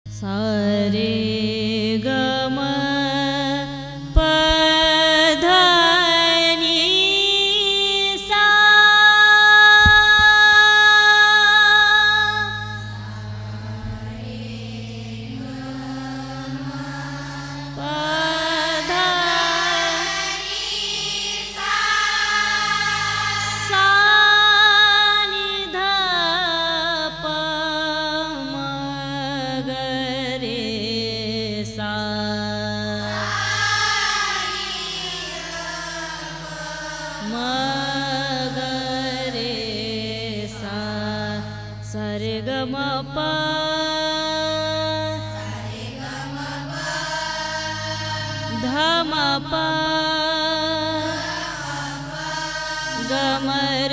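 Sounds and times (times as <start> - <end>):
woman singing long melodic phrases: 0.1 - 20.5, 22.4 - 53.9
steady drone accompaniment: 0.1 - 53.9
low accompanying notes: 9.8 - 25.9.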